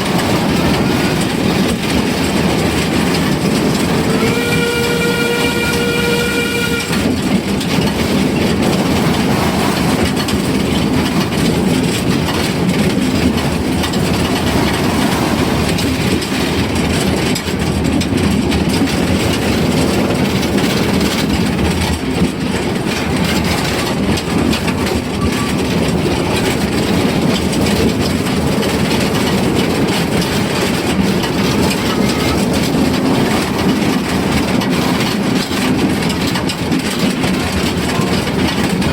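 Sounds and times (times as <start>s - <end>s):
train wheels clattering on track: 0.0s - 38.9s
steam locomotive whistle: 4.0s - 7.2s.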